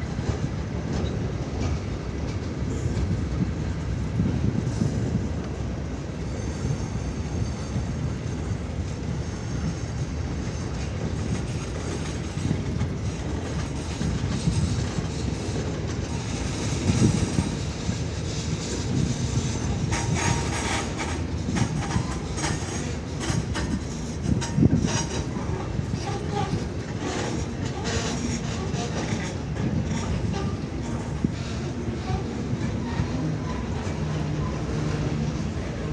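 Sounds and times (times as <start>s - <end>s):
freight train wheels rumbling: 0.0s - 35.9s
wheels clacking over rail joints: 10.7s - 35.9s.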